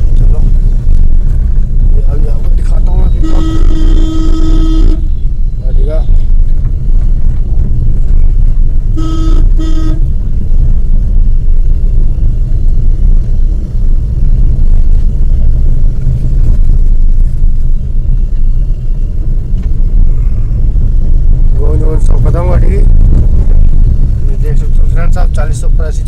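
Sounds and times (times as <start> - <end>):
car driving low rumble: 0.0 - 26.0
car horn toots: 3.0 - 5.3, 8.9 - 10.2.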